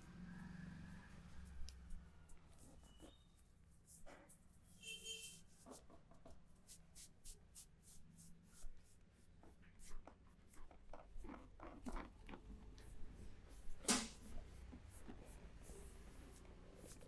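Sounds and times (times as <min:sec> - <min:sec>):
hands rubbing through hair: 0:06.7 - 0:08.6.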